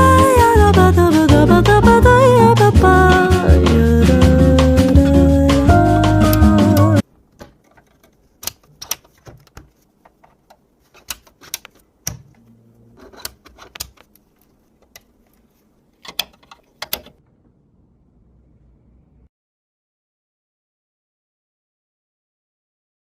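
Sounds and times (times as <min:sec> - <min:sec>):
background music: 0:00.0 - 0:07.0.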